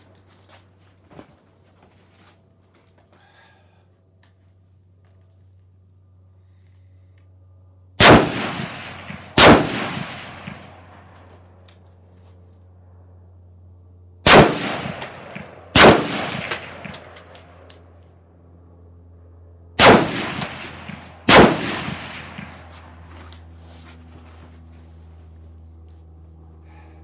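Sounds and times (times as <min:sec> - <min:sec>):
rifle shots echoing: 0:08.0 - 0:11.2, 0:14.2 - 0:17.6, 0:19.8 - 0:23.0.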